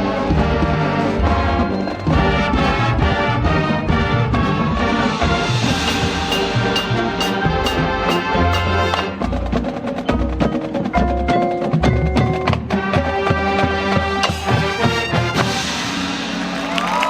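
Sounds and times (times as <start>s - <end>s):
marching band playing: 0.0s - 17.0s
percussion strikes: 5.1s - 17.0s
ringing pitched notes: 5.7s - 9.2s.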